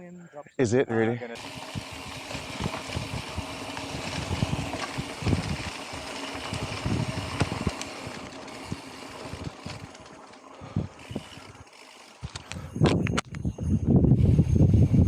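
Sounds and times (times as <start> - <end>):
wind rushing over microphone: 1.4 - 9.9, 12.7 - 15.0
bike thumps and rattles: 1.4 - 13.4.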